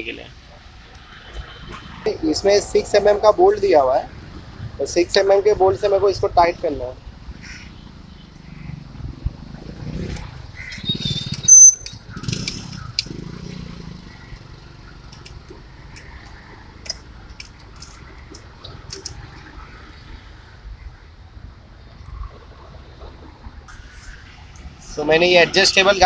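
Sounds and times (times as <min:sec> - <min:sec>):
high-pitched squeak: 0:10.8 - 0:12.0.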